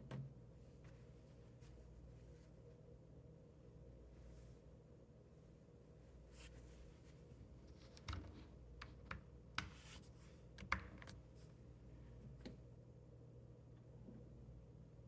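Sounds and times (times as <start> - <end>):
faint clicks and taps: 7.7 - 9.8.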